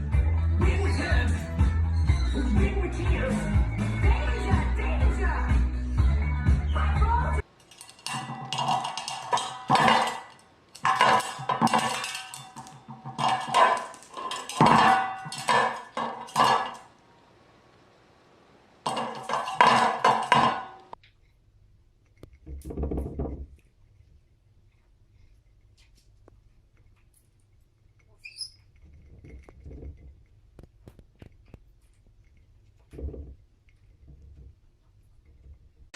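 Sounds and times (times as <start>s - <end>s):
hard objects clinking and knocking: 7.4s - 17.0s, 18.8s - 21.0s.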